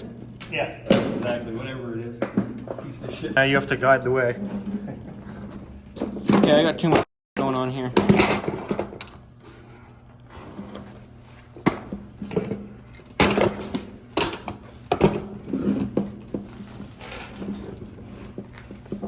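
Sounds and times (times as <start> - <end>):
equipment knocks and clanks: 3.8 - 9.1.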